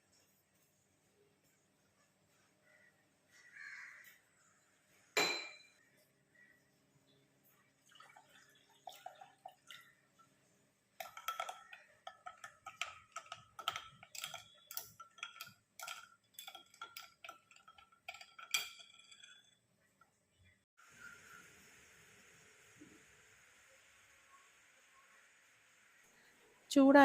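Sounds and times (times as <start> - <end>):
dishes clinking: 5.2 - 5.8, 11.0 - 20.1.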